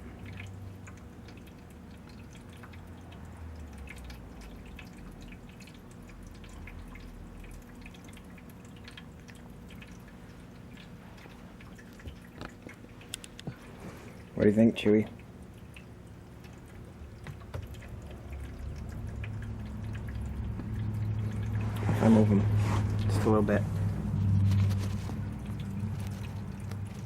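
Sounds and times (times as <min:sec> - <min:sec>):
steady low hum: 0:00.0 - 0:27.0
faint clicks and ticks: 0:00.2 - 0:13.6.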